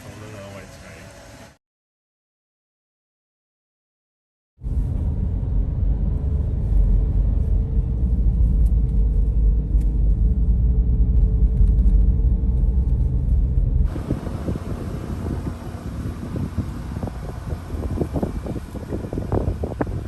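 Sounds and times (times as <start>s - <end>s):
car driving rumble from inside: 4.6s - 20.0s.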